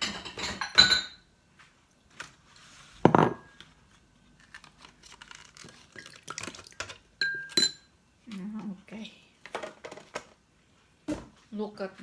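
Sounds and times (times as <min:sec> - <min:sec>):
food packaging tearing: 0:04.4 - 0:06.7
packaging crinkling: 0:04.4 - 0:06.8.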